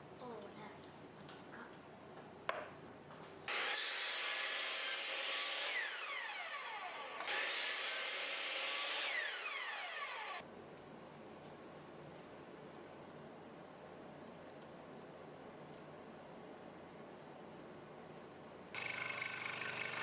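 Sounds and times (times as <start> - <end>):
tool cutting wood: 3.5 - 10.4, 18.8 - 20.0.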